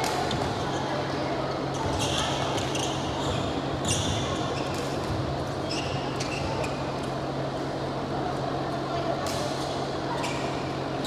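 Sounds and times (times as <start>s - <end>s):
indoor hall hum and murmur: 0.0s - 11.0s.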